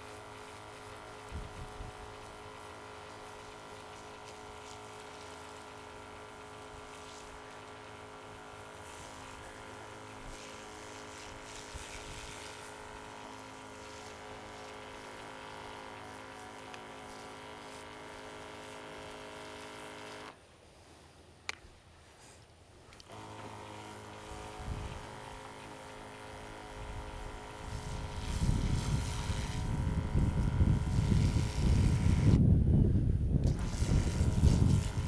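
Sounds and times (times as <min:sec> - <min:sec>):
steady machine hum: 0:23.1 - 0:35.0.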